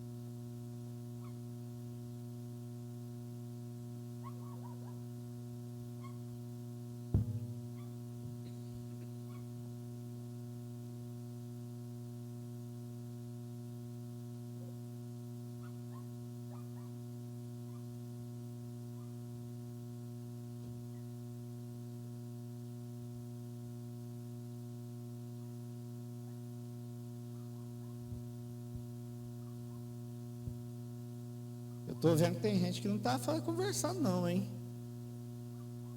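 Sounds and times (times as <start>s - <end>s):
low electrical mains hum: 0.0s - 35.9s
microphone thump: 7.1s - 8.8s.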